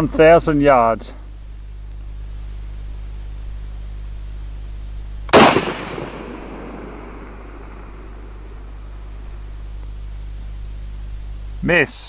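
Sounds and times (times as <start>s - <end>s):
rifle shot: 5.3s - 8.8s.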